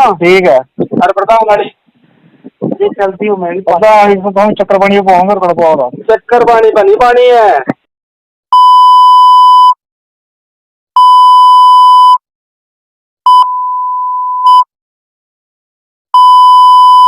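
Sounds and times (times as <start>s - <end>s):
censor bleep tone: 8.5s - 9.8s, 11.0s - 12.2s, 13.3s - 14.7s, 16.2s - 17.0s.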